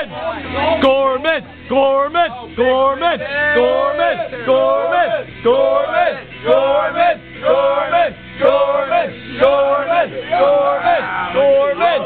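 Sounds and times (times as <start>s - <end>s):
men chanting in unison: 2.6s - 12.0s.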